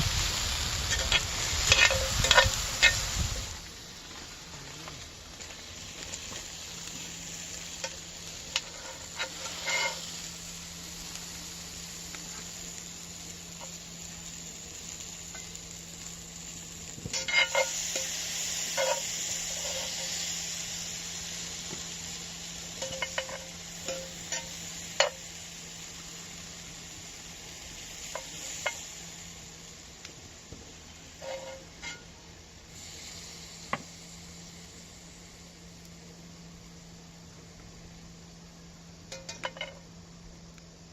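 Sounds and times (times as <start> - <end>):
food sizzling in a frying pan: 0.0 - 40.9.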